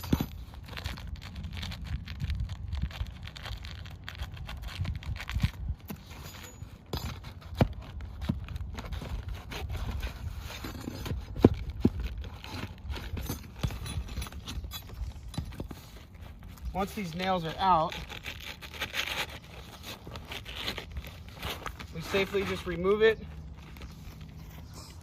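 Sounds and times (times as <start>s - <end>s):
tool scraping shingle: 5.9s - 25.0s.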